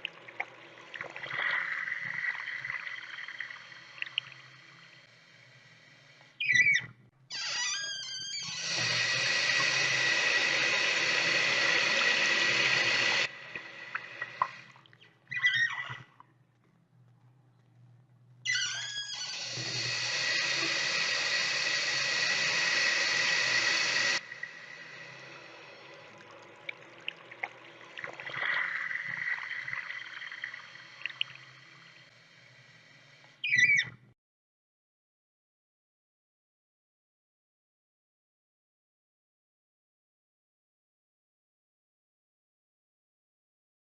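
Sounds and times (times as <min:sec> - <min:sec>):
water dripping: 0:00.0 - 0:05.0, 0:08.4 - 0:16.7, 0:18.7 - 0:32.1
short squeak: 0:06.4 - 0:10.0, 0:18.5 - 0:20.9
loud squeaky sound: 0:06.4 - 0:13.3, 0:18.5 - 0:24.2
tap water running into sink: 0:08.6 - 0:14.7, 0:19.4 - 0:30.2.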